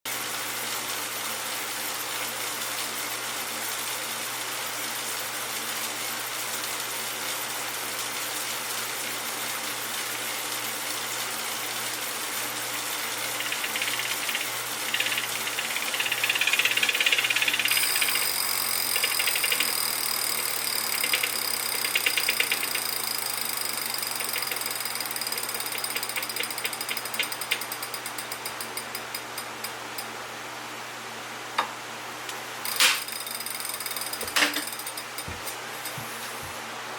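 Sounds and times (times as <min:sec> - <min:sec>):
bike trainer humming and whirring: 0:08.4 - 0:30.1, 0:32.3 - 0:36.7
buzzing rattle: 0:11.8 - 0:30.1, 0:32.6 - 0:35.6
rapid ticking: 0:12.8 - 0:29.7.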